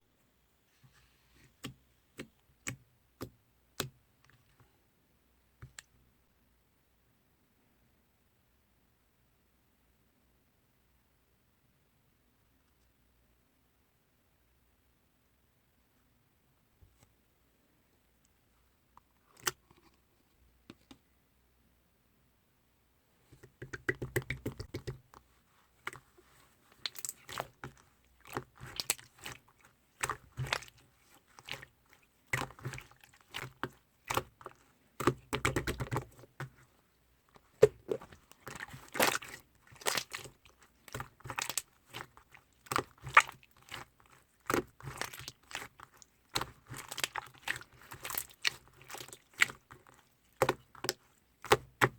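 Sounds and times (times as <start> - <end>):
slime squishing with sticky clicks: 1.5 - 4.6, 23.4 - 25.2, 25.8 - 51.9.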